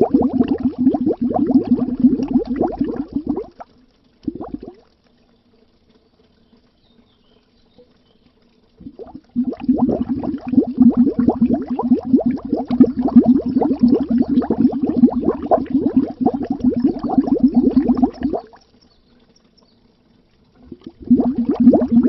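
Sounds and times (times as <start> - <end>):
bubbles rising underwater: 0.0 - 5.0, 8.8 - 19.4, 20.4 - 22.0.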